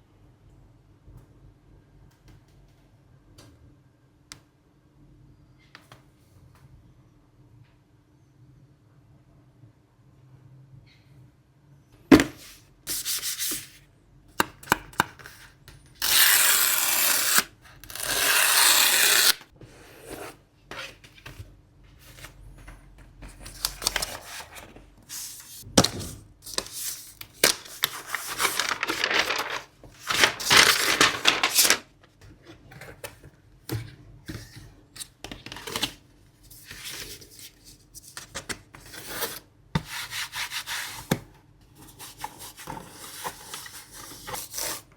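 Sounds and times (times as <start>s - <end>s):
paper and plastic rubbing tearing: 27.4s - 31.8s.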